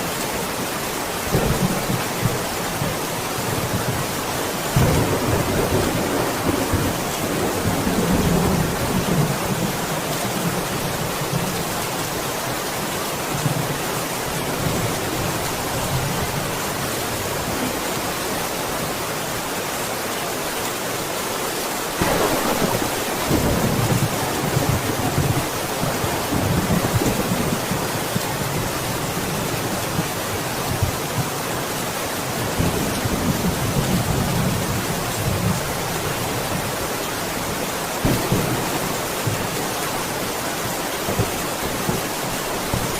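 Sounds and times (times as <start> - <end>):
steady rain falling: 0.0 - 42.9
rolling thunder rumbles: 4.7 - 10.6, 22.0 - 28.5, 38.0 - 39.6.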